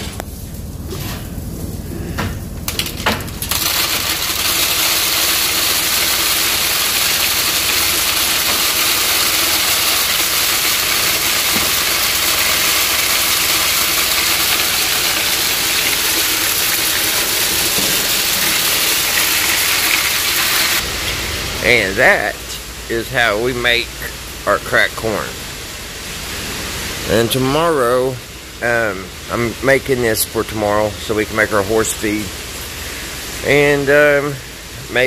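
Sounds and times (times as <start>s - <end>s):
corn cracking machine running: 2.0s - 21.9s.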